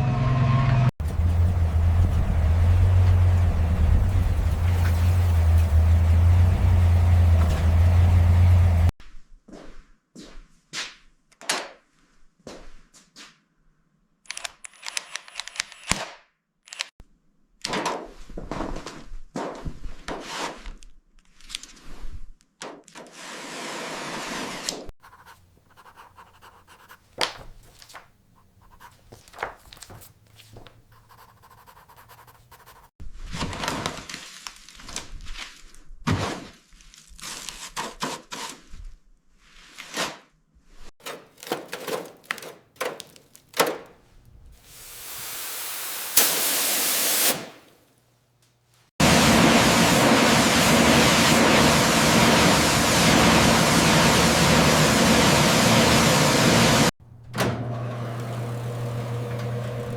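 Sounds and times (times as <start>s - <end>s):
knocks and scrapes: 1.0s - 8.9s, 41.0s - 44.8s
hissing noise bursts: 44.6s - 47.7s.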